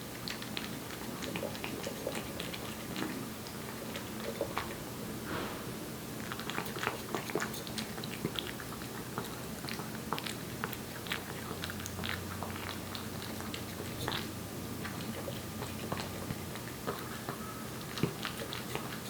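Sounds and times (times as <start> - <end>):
cat eating wet food: 0.0 - 19.0.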